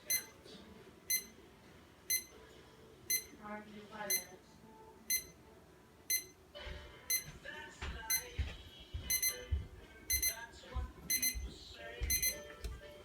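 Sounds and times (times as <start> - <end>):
alarm clock beeping: 0.0 - 0.4, 1.1 - 1.4, 2.1 - 2.4, 3.1 - 3.4, 4.1 - 4.3, 5.1 - 5.4, 6.1 - 6.4, 7.1 - 7.3, 8.1 - 8.3, 9.1 - 9.5, 10.1 - 10.4, 11.1 - 11.5, 12.1 - 12.5.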